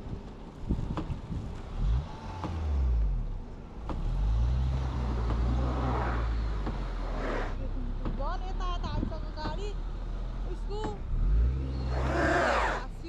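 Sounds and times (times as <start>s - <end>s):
car engine revving: 1.7s - 8.2s, 10.2s - 13.0s.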